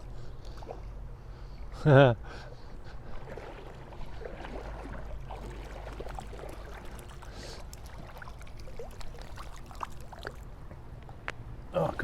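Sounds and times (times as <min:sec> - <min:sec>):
river water running and trickling: 0:02.8 - 0:11.2
small splashes and ticks: 0:03.1 - 0:11.4.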